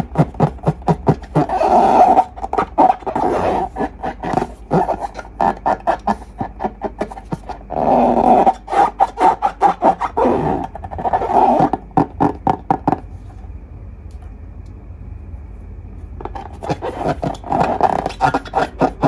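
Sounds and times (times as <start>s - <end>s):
slime squishing: 0.0s - 12.4s.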